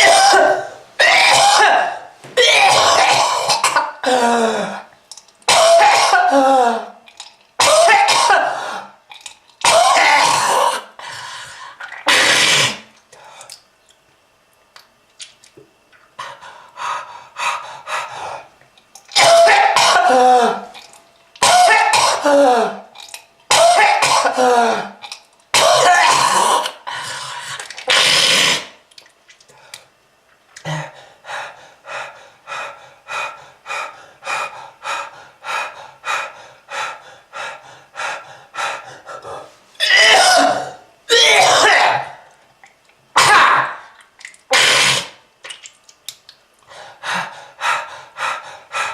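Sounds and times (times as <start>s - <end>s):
person coughing: 0.0s - 4.9s, 5.5s - 6.9s, 7.6s - 8.8s, 9.6s - 10.9s, 19.2s - 20.7s, 21.4s - 22.8s, 23.5s - 25.0s, 25.6s - 26.7s, 39.8s - 42.2s.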